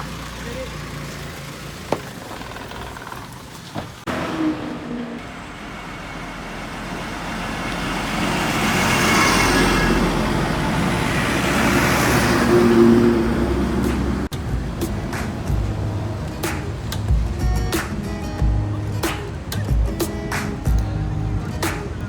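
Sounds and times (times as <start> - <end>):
tyre noise on road: 0.0 - 22.0
vehicle engine running: 0.0 - 22.0.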